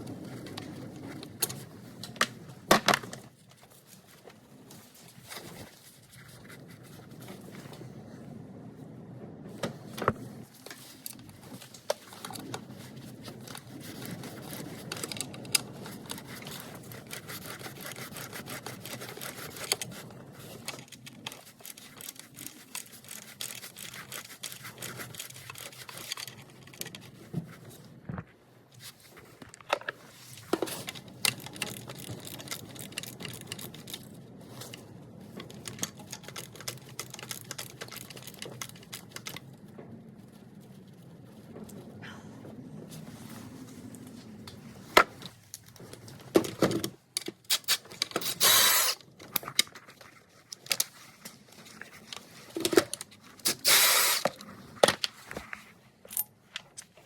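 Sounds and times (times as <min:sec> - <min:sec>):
rustling handling noise: 0:00.0 - 0:08.3, 0:09.5 - 0:57.0.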